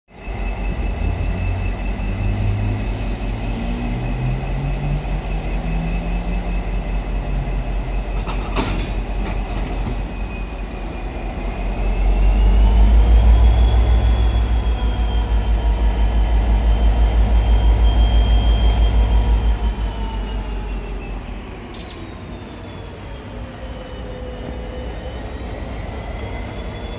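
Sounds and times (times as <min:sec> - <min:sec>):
high whine: 0:00.1 - 0:08.5
diesel train engine throb: 0:00.1 - 0:26.9.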